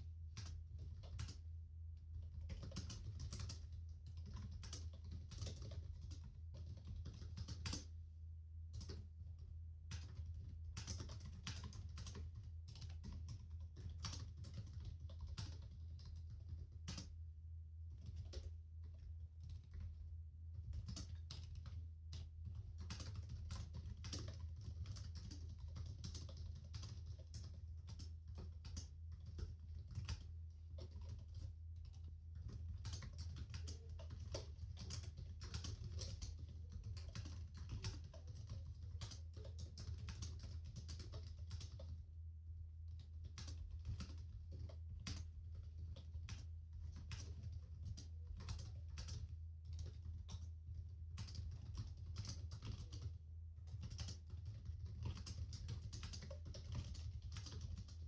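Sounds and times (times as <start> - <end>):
keyboard typing: 2.2 - 7.9, 9.9 - 17.1, 18.0 - 20.0, 20.6 - 42.0, 42.9 - 58.0.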